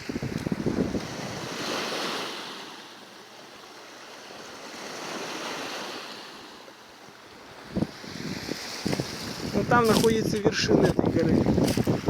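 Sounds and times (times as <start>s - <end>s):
wind buffeting microphone: 0.0s - 1.9s, 7.5s - 12.0s
sea waves washing onto shore: 0.0s - 12.0s.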